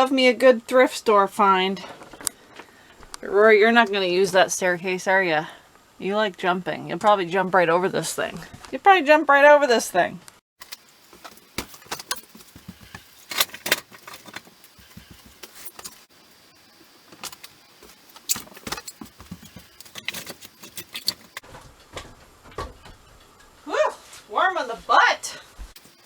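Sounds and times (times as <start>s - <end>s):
objects clinking and knocking: 10.6s - 16.1s, 17.1s - 23.6s.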